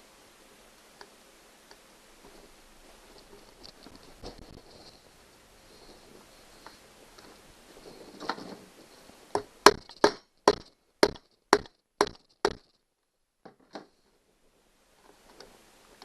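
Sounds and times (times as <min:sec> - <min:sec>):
faint ticks: 0:00.8 - 0:09.4
sharp knocks on plastic clip: 0:09.4 - 0:12.7.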